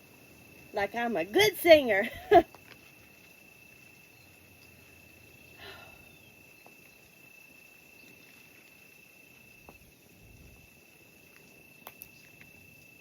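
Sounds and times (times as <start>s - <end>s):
soft rustle: 6.6s - 13.0s.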